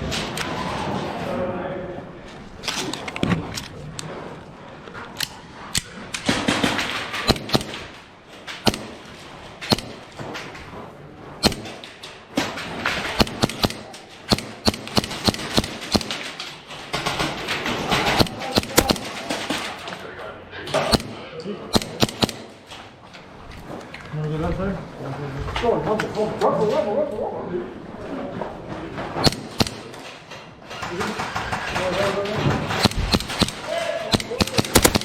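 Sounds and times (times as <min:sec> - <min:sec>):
movement noise: 0:00.0 - 0:35.0
airsoft gunshots: 0:05.8 - 0:10.3, 0:11.4 - 0:19.8, 0:20.8 - 0:22.7, 0:29.2 - 0:30.2, 0:30.8 - 0:35.0.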